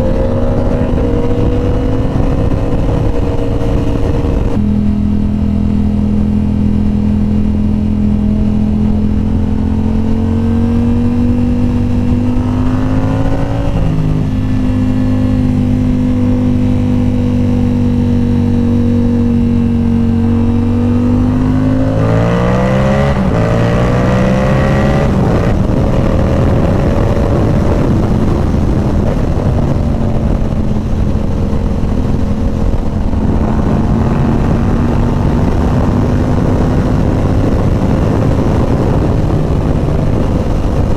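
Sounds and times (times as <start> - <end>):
motorcycle engine accelerating: 0.0 - 40.9
loud rushing noise: 9.7 - 40.9.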